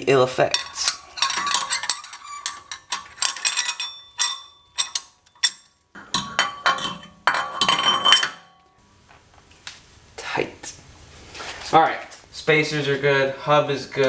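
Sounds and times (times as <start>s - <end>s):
metal parts clinking: 0.4s - 8.6s.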